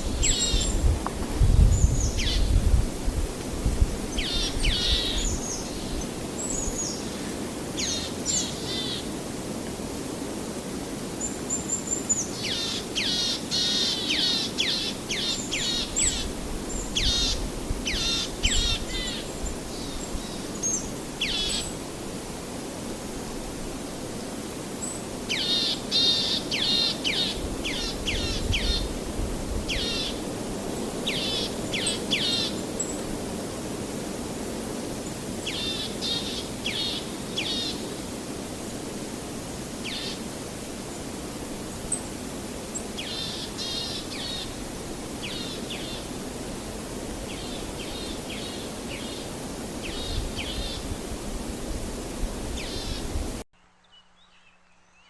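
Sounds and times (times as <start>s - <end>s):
steady background hiss: 0.0s - 55.0s
songbird calling: 0.1s - 0.9s, 1.7s - 2.6s, 4.1s - 9.1s, 11.2s - 21.8s, 24.8s - 29.0s, 29.7s - 30.3s, 31.0s - 33.1s, 35.4s - 38.1s, 39.8s - 40.3s, 42.8s - 46.2s, 47.2s - 51.0s, 52.5s - 53.2s.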